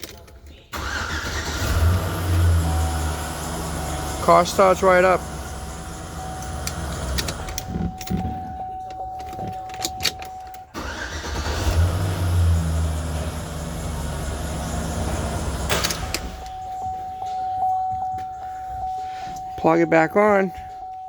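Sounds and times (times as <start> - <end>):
truck engine cranking and running: 0.0 - 18.0
steady electronic tone: 14.5 - 21.0.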